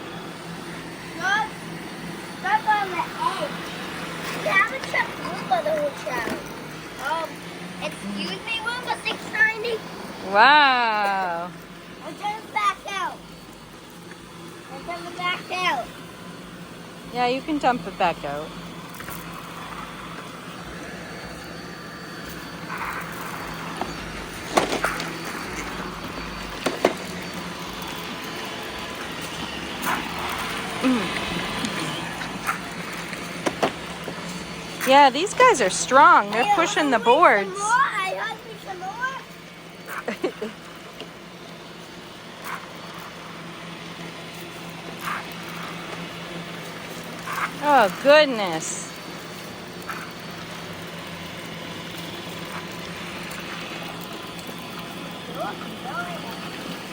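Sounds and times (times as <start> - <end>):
robot vacuums humming: 0.0 - 56.9.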